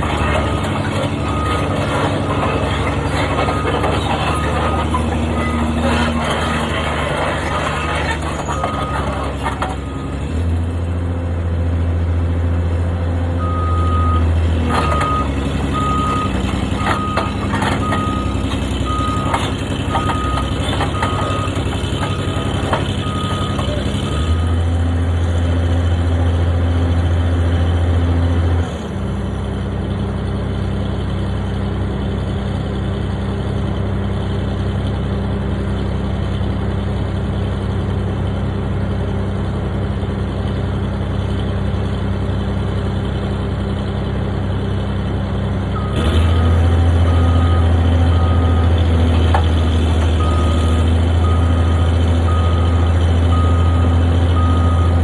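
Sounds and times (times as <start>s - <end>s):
reversing alarm beeping: 0.0s - 10.2s, 13.4s - 24.5s, 47.1s - 49.4s, 50.2s - 55.0s
construction machine engine running: 0.0s - 55.0s.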